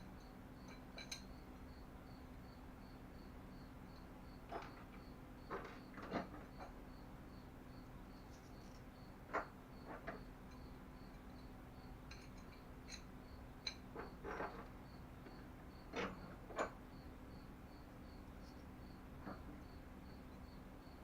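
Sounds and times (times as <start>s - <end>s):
cricket chirping: 0.0s - 21.0s
small parts clicking and knocking: 0.1s - 1.7s, 8.2s - 16.8s.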